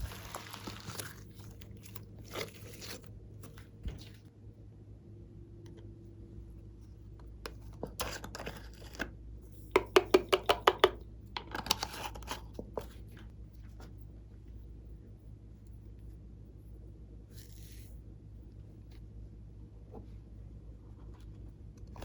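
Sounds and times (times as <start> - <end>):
slime squishing: 0.0 - 4.3.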